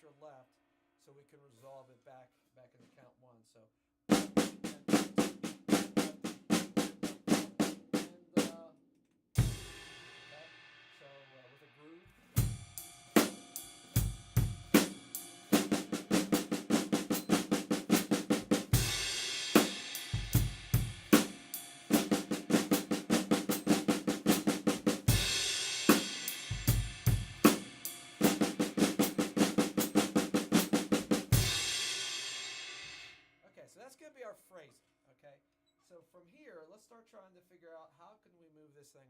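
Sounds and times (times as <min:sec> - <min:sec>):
snare drum rolls: 0:04.1 - 0:08.6, 0:14.4 - 0:31.7
cymbal crash: 0:18.8 - 0:23.0, 0:25.1 - 0:29.2, 0:31.3 - 0:33.1.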